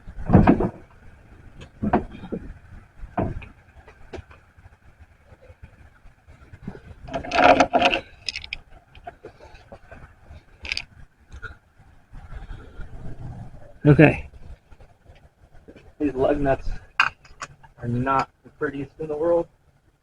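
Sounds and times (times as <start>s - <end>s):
wheel knocks and scrapes: 0.0s - 4.7s, 6.5s - 10.1s
metallic clatter: 5.3s - 11.0s, 16.9s - 18.3s.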